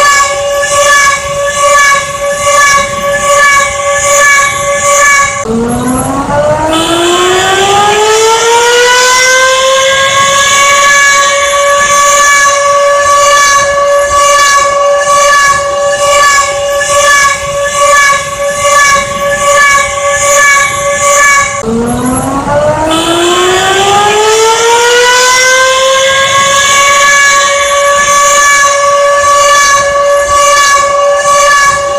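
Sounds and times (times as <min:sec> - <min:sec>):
emergency siren winding up: 0:00.0 - 0:31.9.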